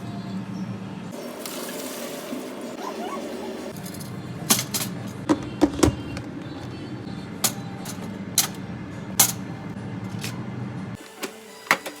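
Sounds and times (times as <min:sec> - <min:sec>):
utensils clinking against dishes: 0:02.8 - 0:06.7, 0:07.4 - 0:10.4.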